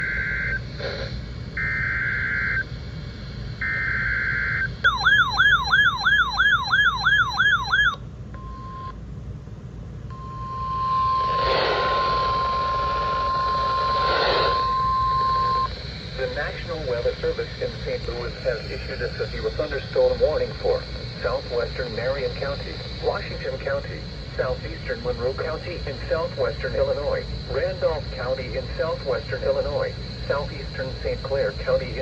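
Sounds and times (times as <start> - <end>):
steady warning alarm tone: 0.0 - 0.9, 1.5 - 2.8, 3.5 - 9.0, 10.1 - 31.8
harsh buzzing data bursts: 0.0 - 8.0, 10.2 - 32.0
warbling alarm tone: 3.6 - 8.0, 10.1 - 16.5
rough hiss: 13.9 - 14.7.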